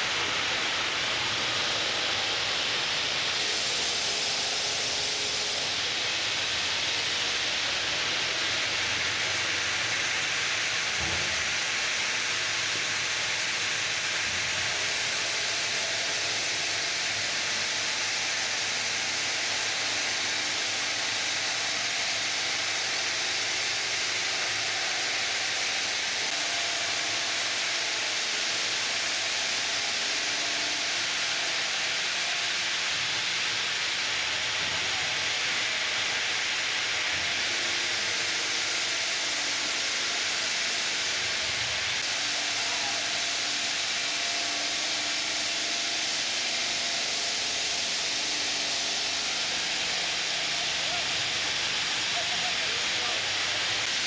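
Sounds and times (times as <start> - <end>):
stone cutting machine grinding: 0.0 - 54.0.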